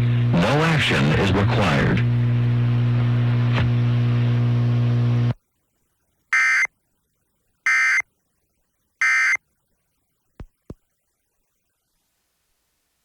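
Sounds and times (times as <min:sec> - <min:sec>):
steady low hum: 0:00.0 - 0:05.4.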